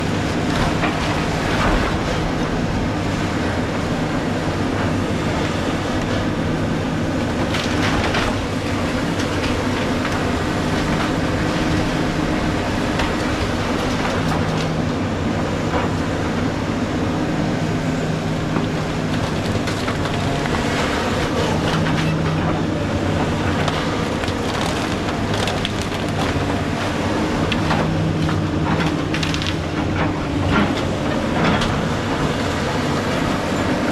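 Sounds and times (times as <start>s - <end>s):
diesel engine under load: 0.0s - 33.9s
clanking and crunching: 0.3s - 3.6s, 7.4s - 14.9s, 19.1s - 33.8s.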